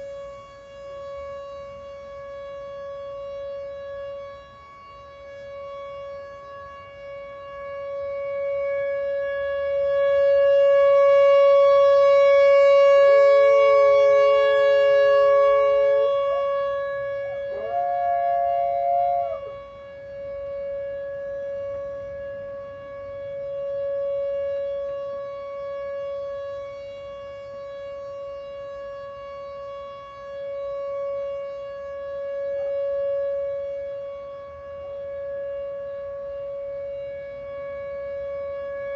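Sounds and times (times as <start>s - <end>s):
warning siren: 0.0s - 38.9s
dog howling: 17.5s - 19.5s.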